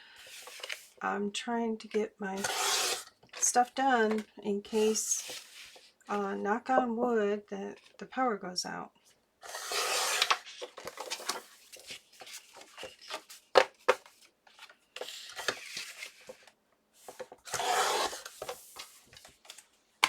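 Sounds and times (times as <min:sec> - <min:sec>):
paper trimmer cutting cardstock: 0:02.4 - 0:03.0, 0:09.5 - 0:10.4, 0:17.5 - 0:18.3.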